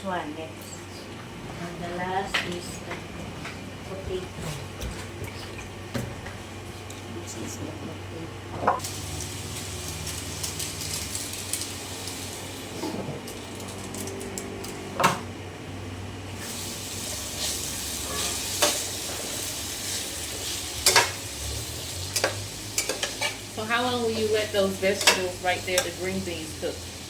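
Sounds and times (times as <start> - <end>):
vegetables hissing in pot: 8.8 - 13.0, 16.4 - 27.0
utensil clanking against pot: 22.1 - 23.4, 24.1 - 26.0.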